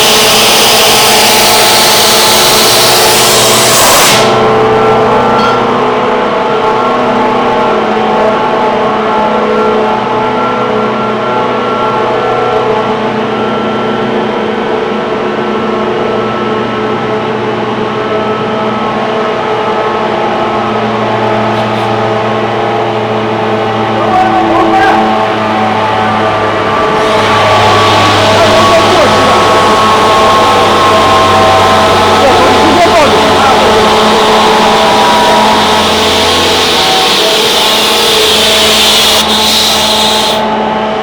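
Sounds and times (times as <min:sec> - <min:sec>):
air compressor humming: 0:00.0 - 0:07.7, 0:20.2 - 0:41.0.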